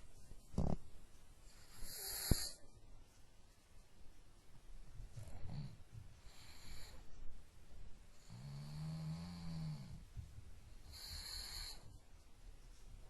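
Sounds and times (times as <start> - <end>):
dog snoring: 1.6 - 2.6, 5.2 - 7.0, 8.2 - 10.1, 10.9 - 11.9.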